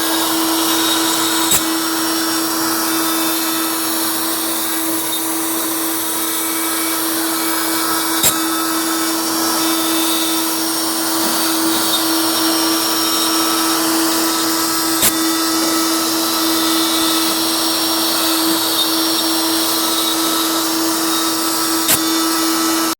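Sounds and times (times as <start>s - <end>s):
machine tool humming: 0.0s - 22.9s.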